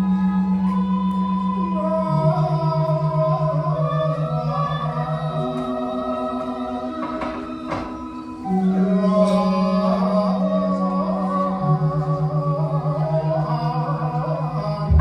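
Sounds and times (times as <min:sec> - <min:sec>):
wavering sung melody: 0:00.0 - 0:15.0
pulsing low drone: 0:08.4 - 0:15.0.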